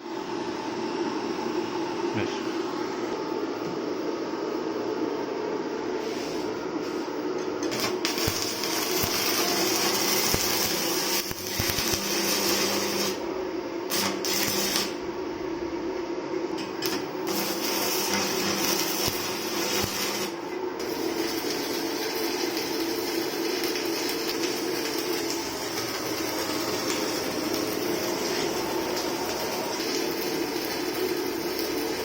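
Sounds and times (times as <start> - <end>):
welding arc crackling and sizzling: 7.6 - 15.0, 16.5 - 32.0.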